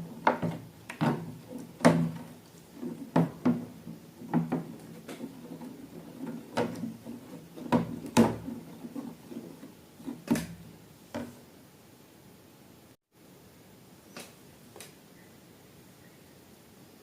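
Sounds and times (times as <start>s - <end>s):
handling clicks and knocks: 0.0s - 11.4s.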